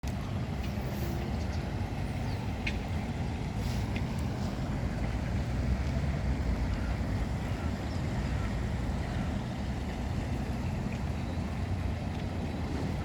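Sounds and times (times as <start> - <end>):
low outdoor rumble: 0.0 - 13.0.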